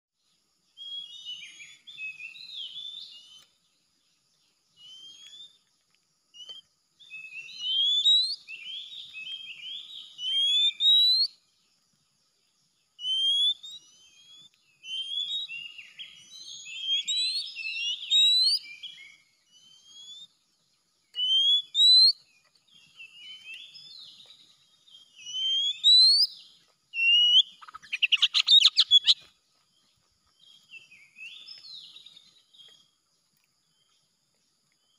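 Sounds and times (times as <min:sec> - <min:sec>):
bird singing whistled notes: 0:00.7 - 0:03.6, 0:04.7 - 0:05.6, 0:06.3 - 0:11.6, 0:13.0 - 0:29.3, 0:30.4 - 0:32.9
bird chattering: 0:27.2 - 0:29.2.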